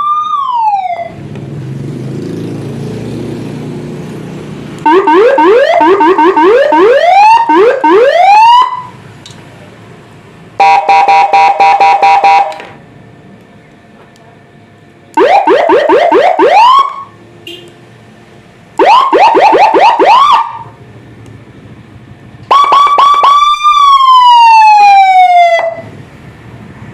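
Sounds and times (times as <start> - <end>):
electronic siren through loudspeaker: 0.0 - 1.2, 4.8 - 9.0, 10.6 - 12.6, 15.1 - 17.2, 18.8 - 20.8, 22.5 - 25.9.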